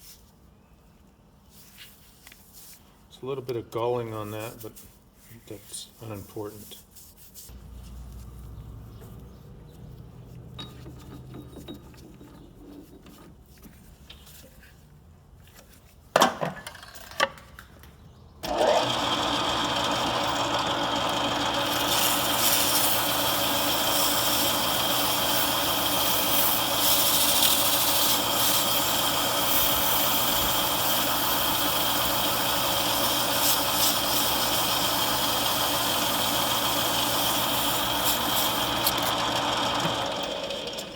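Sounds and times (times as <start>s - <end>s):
power tool motor running: 18.4s - 40.9s.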